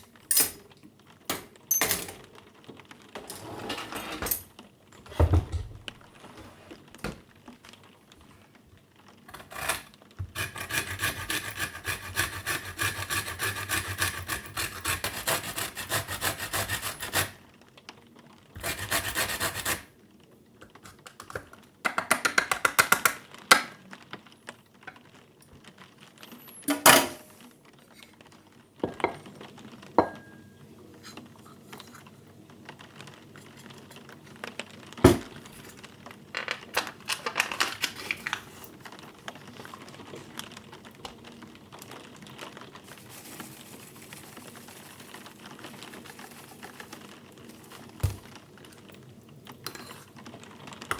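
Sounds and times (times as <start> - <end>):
utensils and dishes clinking: 0.0 - 2.4, 26.4 - 27.4, 30.0 - 30.6, 35.1 - 38.4.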